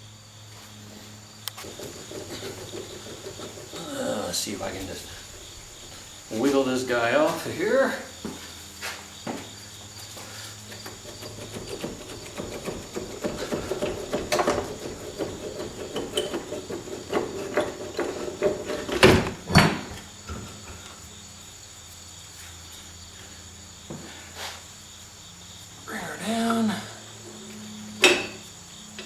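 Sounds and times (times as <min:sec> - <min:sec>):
loud metal clunks: 0:01.6 - 0:06.0, 0:10.7 - 0:20.8, 0:28.0 - 0:28.5
metal rattling scraping and knocking: 0:01.6 - 0:07.8, 0:10.4 - 0:21.0, 0:27.2 - 0:29.0.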